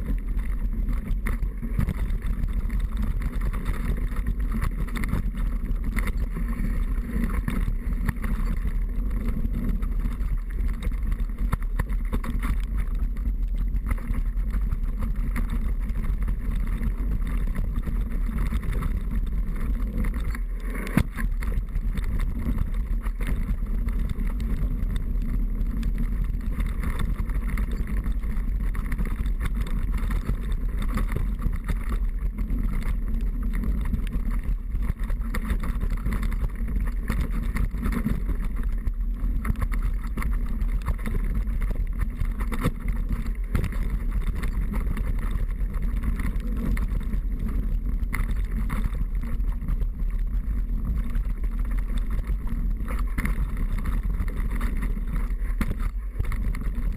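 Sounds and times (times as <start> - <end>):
bike rattling and rumble: 0.0 - 56.9
wind rush over microphone: 0.0 - 56.9.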